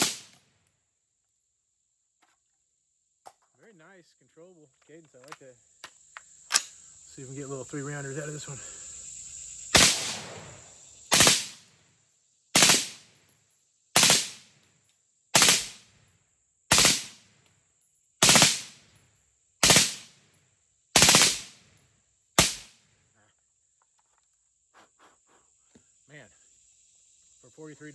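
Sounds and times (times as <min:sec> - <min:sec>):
rifle firing rapid bursts: 0:00.0 - 0:00.3, 0:09.8 - 0:11.6, 0:12.6 - 0:13.0, 0:14.0 - 0:14.5, 0:15.4 - 0:15.8, 0:16.7 - 0:17.2, 0:18.2 - 0:18.8, 0:19.6 - 0:20.1, 0:21.0 - 0:21.6, 0:22.4 - 0:22.7.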